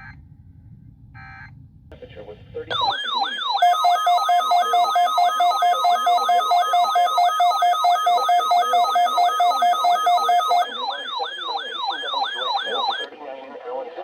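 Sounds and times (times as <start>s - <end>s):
electronic siren-like warble: 2.7s - 13.1s
pulsing two-tone beep: 2.7s - 13.1s.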